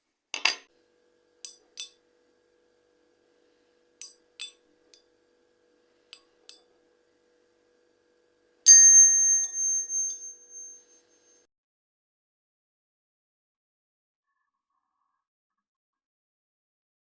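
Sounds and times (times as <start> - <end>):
ringing metallic strike: 8.7 - 11.4.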